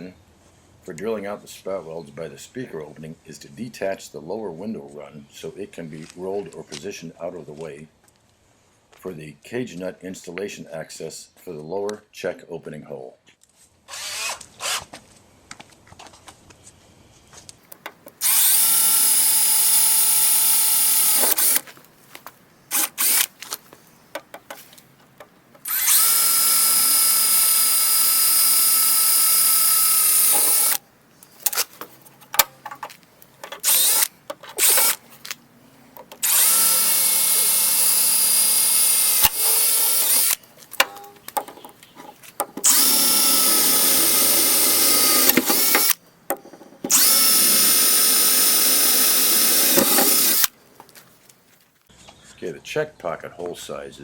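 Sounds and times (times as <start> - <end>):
cordless drill whining: 13.9 - 14.9, 18.2 - 21.6, 22.7 - 23.3, 25.6 - 30.8, 33.6 - 35.0, 36.2 - 40.4, 42.6 - 46.0, 46.8 - 50.5.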